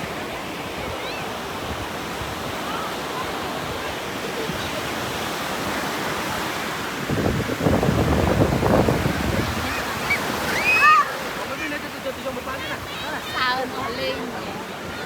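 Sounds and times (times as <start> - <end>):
sea waves washing onto beach: 0.0 - 15.0
wind on microphone: 5.6 - 11.3.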